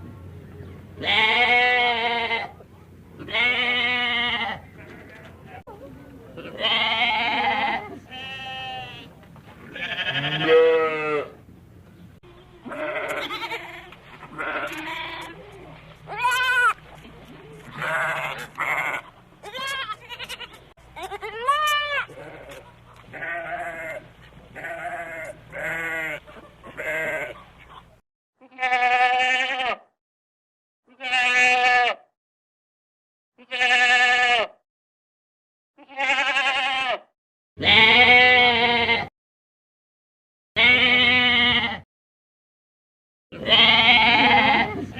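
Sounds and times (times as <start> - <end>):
goats bleating: 1.0 - 2.6, 3.2 - 5.6, 6.4 - 9.1, 9.7 - 11.4, 12.3 - 27.8, 28.4 - 29.8, 30.9 - 32.0, 33.4 - 34.6, 35.8 - 37.0, 37.6 - 39.1, 40.6 - 41.8, 43.4 - 44.9.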